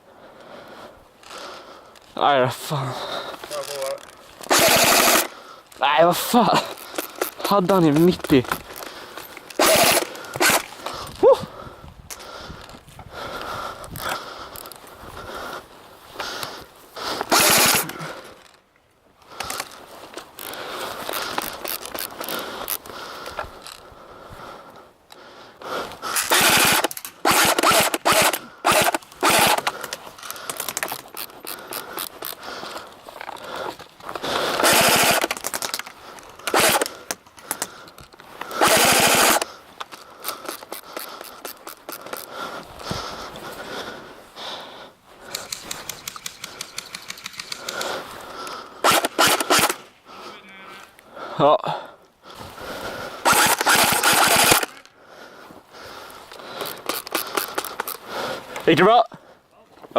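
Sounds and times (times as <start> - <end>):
airsoft guns firing bursts: 4.5 - 5.3, 9.6 - 10.7, 17.3 - 17.9, 26.2 - 29.9, 34.4 - 35.8, 36.4 - 37.0, 38.5 - 39.5, 45.3 - 48.0, 48.8 - 49.9, 53.2 - 54.8.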